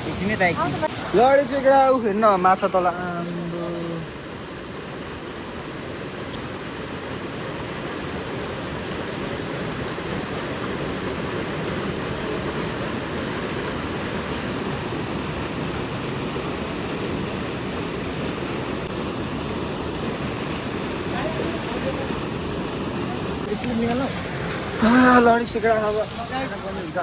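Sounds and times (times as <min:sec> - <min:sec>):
waterfall rushing: 0:00.0 - 0:27.0.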